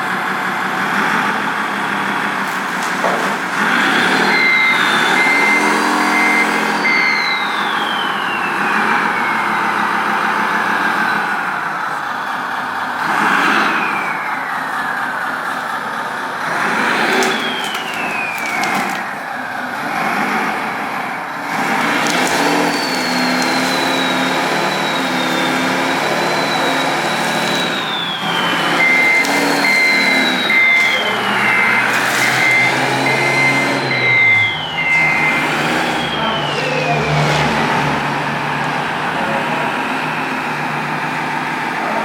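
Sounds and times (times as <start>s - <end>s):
electric motors whining: 2.0s - 42.0s
steady beeps: 3.8s - 11.6s, 22.2s - 37.3s.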